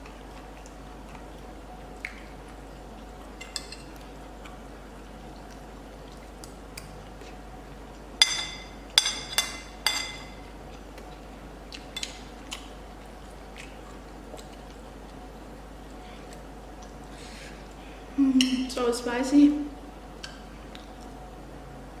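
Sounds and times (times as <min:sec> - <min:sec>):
cutlery clinking against a dish: 0:08.2 - 0:10.4.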